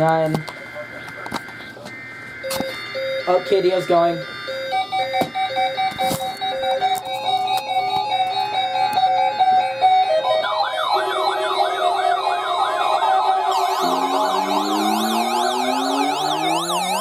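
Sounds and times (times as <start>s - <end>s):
wailing electronic siren: 0.6s - 17.0s
fast warbling siren: 8.5s - 17.0s
electronic melody of short notes: 13.5s - 17.0s
low rising tones: 13.6s - 17.0s.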